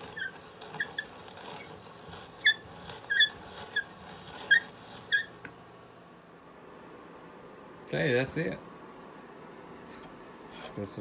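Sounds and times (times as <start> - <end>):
drill bit rasping through wood: 0.0 - 5.5
hand brace squeaking: 0.0 - 5.5.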